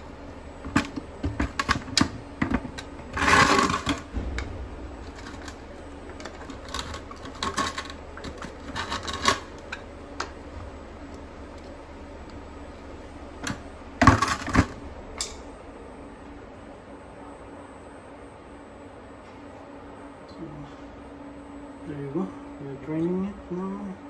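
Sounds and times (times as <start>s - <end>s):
rattling scrape: 2.7s - 9.9s.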